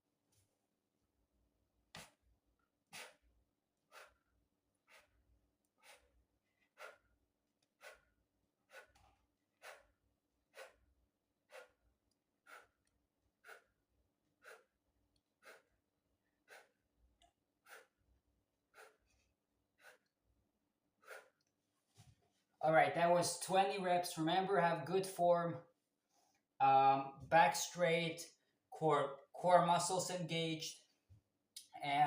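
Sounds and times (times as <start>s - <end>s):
man breathing faintly: 3.9s - 11.8s, 12.4s - 14.8s, 15.4s - 16.8s, 17.6s - 18.0s, 18.7s - 20.1s, 21.0s - 21.4s.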